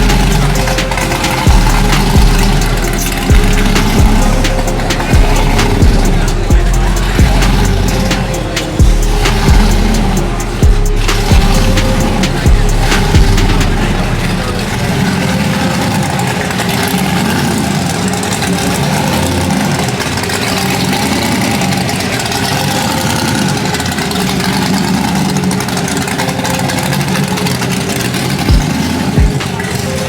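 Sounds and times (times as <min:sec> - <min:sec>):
car engines idling: 0:00.0 - 0:30.0.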